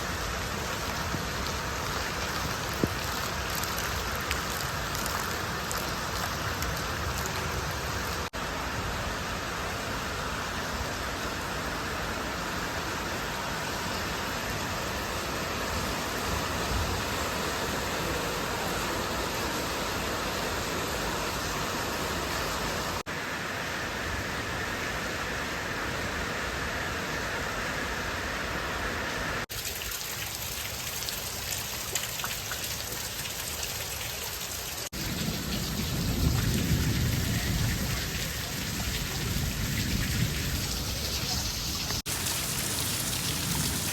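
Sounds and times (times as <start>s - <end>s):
heavy rain falling: 0.0s - 43.9s.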